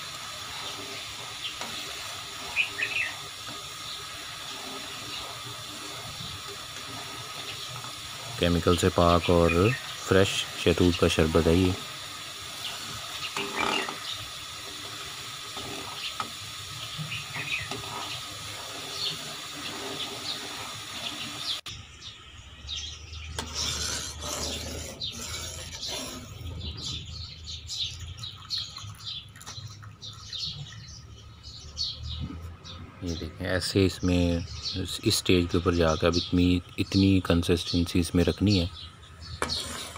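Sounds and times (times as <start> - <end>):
syrup bubbling and popping: 28.0 - 31.0.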